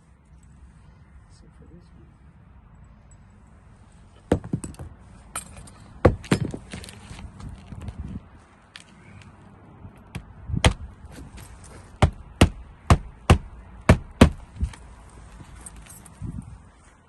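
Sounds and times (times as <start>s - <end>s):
hammer striking nails: 12.0s - 14.4s.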